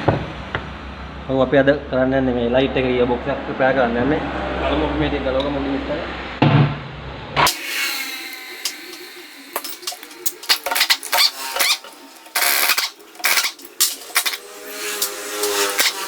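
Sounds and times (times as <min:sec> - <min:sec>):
metal scraping: 0:07.5 - 0:16.0
metal parts clinking and knocking: 0:08.6 - 0:16.0.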